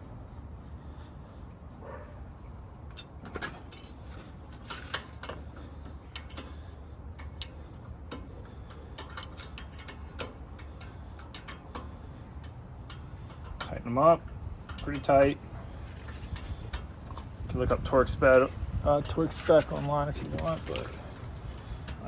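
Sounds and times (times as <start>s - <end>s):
steady low hum: 0.0s - 22.0s
metallic clicks and taps of tools: 4.6s - 6.6s, 7.2s - 13.8s, 14.6s - 15.4s, 19.6s - 22.0s.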